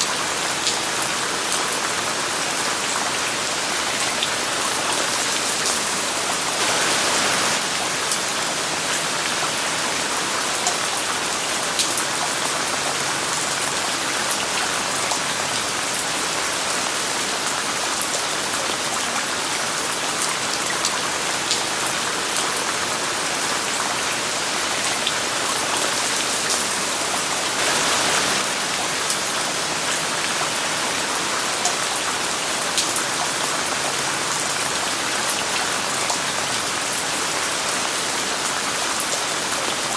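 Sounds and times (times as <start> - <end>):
steady rain falling: 0.0 - 39.9
white noise: 4.8 - 8.1, 25.3 - 28.8.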